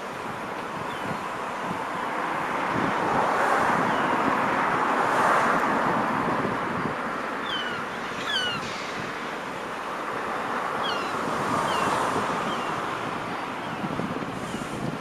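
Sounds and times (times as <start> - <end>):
short high squeaks: 7.5 - 9.0.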